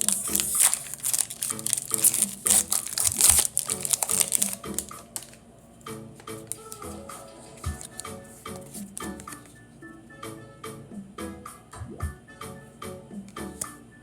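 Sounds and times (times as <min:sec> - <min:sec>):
foil wrapper crinkling and tearing: 0:00.0 - 0:05.4, 0:06.3 - 0:07.0, 0:07.7 - 0:09.4
background music: 0:00.0 - 0:14.0.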